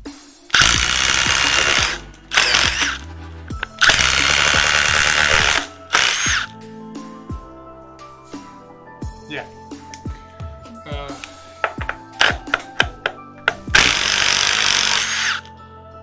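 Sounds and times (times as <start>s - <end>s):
impact driver hammering screw: 0.5s - 3.0s, 3.6s - 6.5s, 11.8s - 15.5s.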